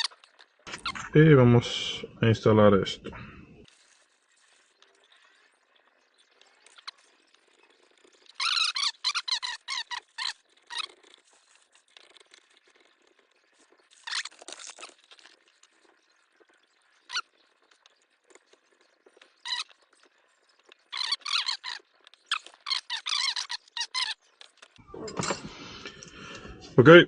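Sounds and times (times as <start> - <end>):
metal parts squeaking: 6.7 - 12.2, 13.9 - 15.0, 20.8 - 26.0.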